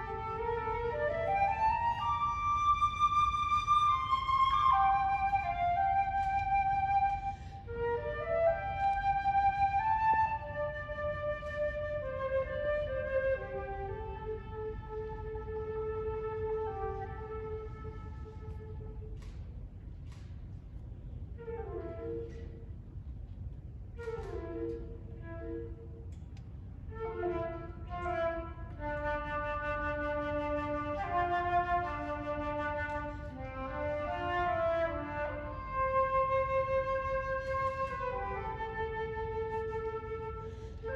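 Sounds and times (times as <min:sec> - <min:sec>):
flute melody: 0:00.0 - 0:19.5, 0:21.4 - 0:22.8, 0:23.9 - 0:26.2, 0:26.8 - 0:40.9
breath noise: 0:40.4 - 0:40.8.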